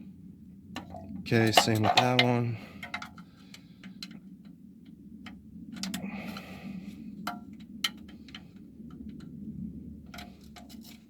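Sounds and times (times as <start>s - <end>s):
metal hand tools clinking: 1.3s - 3.0s.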